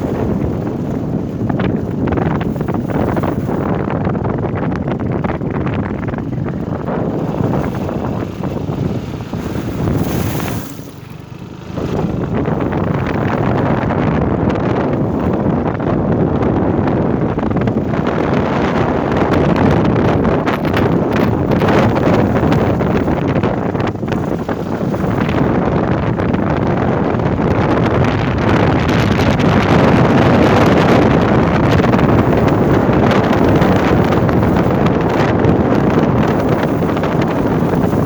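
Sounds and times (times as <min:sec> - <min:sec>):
wind buffeting microphone: 0:00.0 - 0:38.0.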